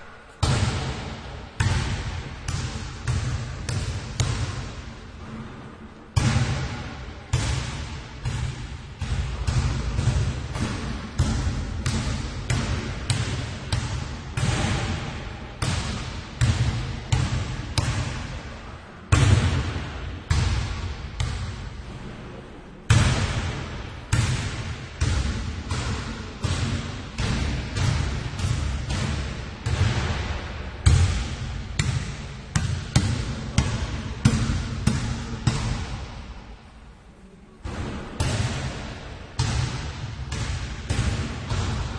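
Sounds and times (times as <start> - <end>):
basketball bouncing: 0.4 - 5.6, 6.2 - 18.5, 19.1 - 21.7, 22.9 - 36.2, 37.6 - 41.9.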